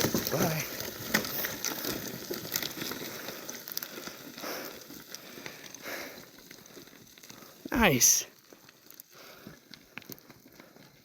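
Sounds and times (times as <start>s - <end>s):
branches crackling and snapping: 0.0s - 4.4s.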